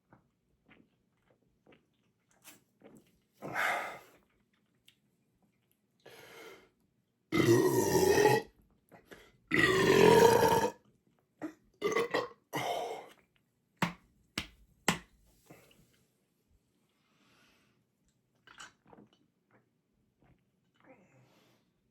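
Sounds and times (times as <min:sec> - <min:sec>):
man belching: 0:07.4 - 0:08.4, 0:09.5 - 0:10.8, 0:11.8 - 0:12.9.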